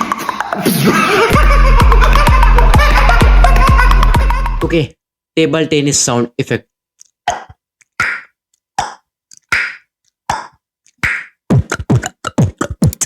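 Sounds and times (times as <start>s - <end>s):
beatbox rhythm with bass kicks: 0.0s - 4.7s, 7.3s - 13.0s
beatboxed pocks: 0.0s - 4.7s, 7.2s - 13.0s.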